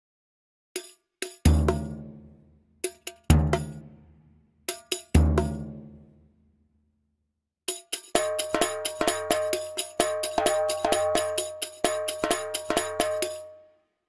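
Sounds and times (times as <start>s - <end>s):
percussion strikes with jingly ring: 0.8s - 3.8s, 4.7s - 5.7s, 7.7s - 13.8s.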